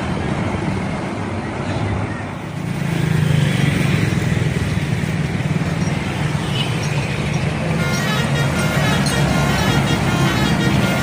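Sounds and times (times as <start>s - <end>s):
road noise: 0.0s - 11.0s
bus engine droning: 7.2s - 11.0s.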